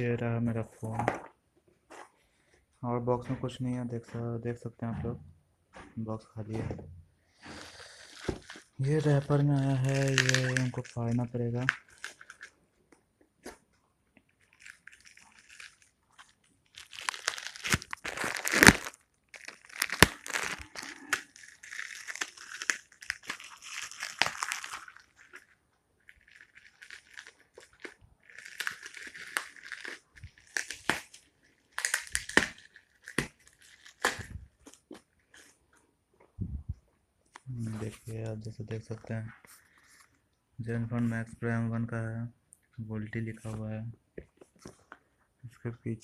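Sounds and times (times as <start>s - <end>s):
wrapper crinkling and tearing: 7.5s - 12.6s, 14.3s - 35.6s.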